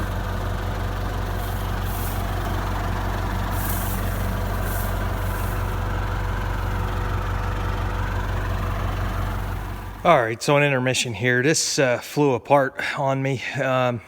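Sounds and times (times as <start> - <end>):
tractor engine idling: 0.0 - 12.0
brief hisses: 1.4 - 2.4, 3.5 - 5.8.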